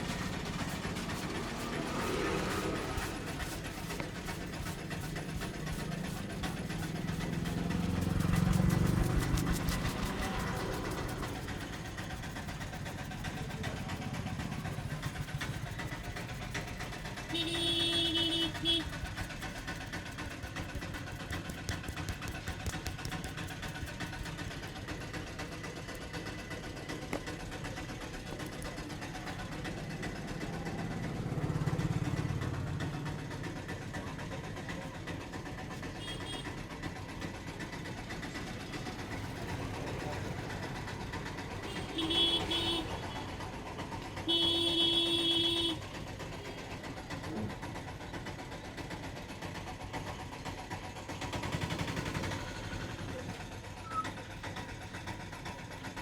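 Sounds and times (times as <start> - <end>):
vehicle engine rumbling past: 0.0 - 20.2, 25.8 - 36.0
car horn honking: 17.3 - 18.8, 41.7 - 43.0, 44.3 - 45.8.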